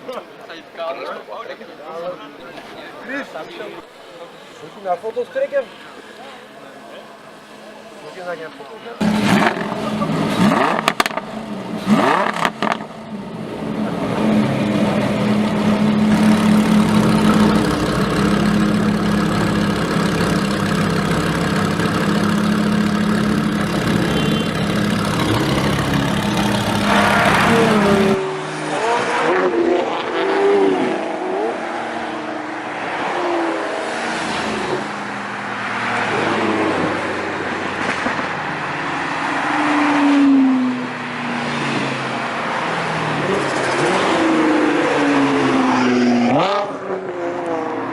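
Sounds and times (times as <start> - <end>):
voices: 0.0 - 11.8
exhaust cracks: 9.0 - 13.0
sports car engine revving: 9.0 - 38.0.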